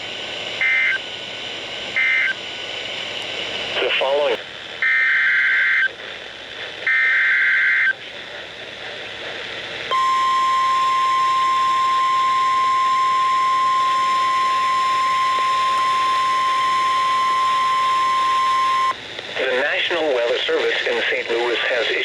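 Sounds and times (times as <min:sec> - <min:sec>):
steady single-pitch alarm tone: 0:09.9 - 0:19.0
warbling data screech: 0:09.9 - 0:19.0.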